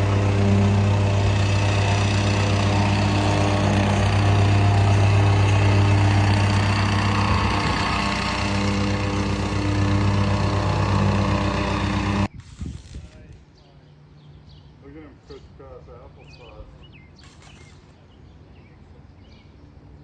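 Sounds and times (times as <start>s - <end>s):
plate compactor engine drone: 0.0s - 12.3s.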